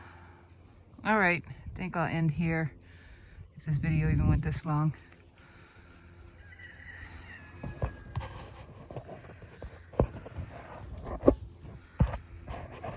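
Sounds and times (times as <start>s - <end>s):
faint animal call: 4.9s - 10.9s
sharp knocks and thumps: 7.6s - 12.9s.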